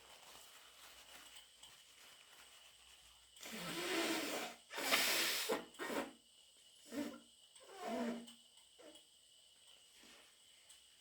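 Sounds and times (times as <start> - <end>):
person blowing runny nose: 3.4 - 6.1.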